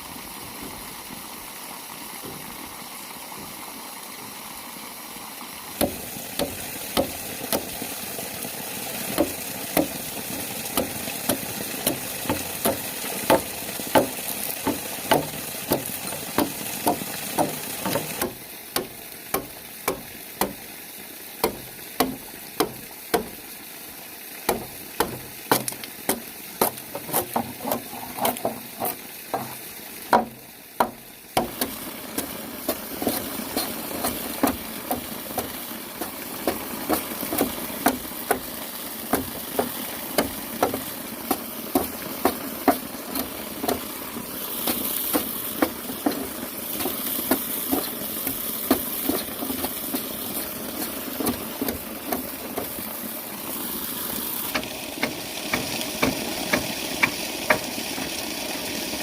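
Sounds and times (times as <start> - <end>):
steady hiss: 0.0 - 59.0
sharp knocks and taps: 9.2 - 10.0, 10.8 - 20.6, 21.4 - 23.3, 24.5 - 38.5, 44.7 - 52.7.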